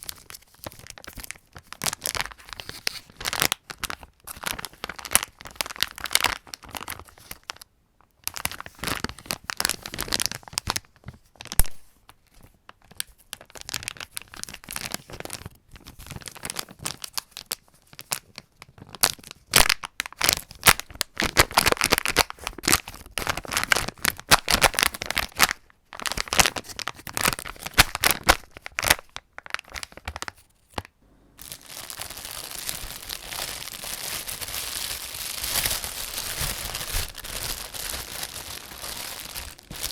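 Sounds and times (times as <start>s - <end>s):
plastic bag crinkling: 0.0s - 7.6s, 8.2s - 39.9s
plastic bread bag crinkling: 0.0s - 39.9s.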